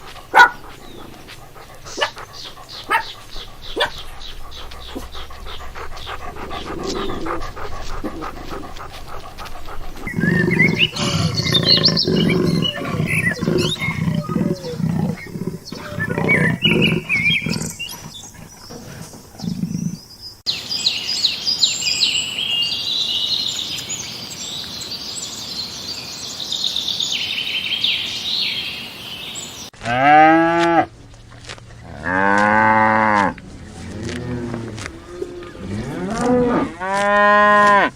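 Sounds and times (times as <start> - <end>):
animals calling: 0.0 - 23.9, 26.6 - 37.9
high-pitched animal calls: 1.8 - 18.3.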